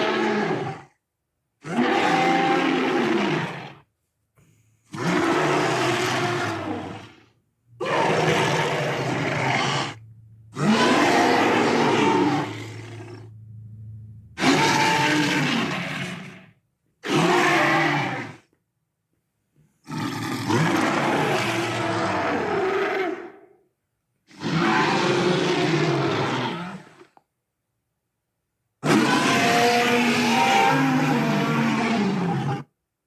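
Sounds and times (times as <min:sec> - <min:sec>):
dinosaur roars: 0:00.0 - 0:01.0, 0:01.6 - 0:03.9, 0:04.8 - 0:18.5, 0:19.8 - 0:23.6, 0:24.3 - 0:27.2, 0:28.8 - 0:32.7
low steady hum: 0:09.9 - 0:14.4.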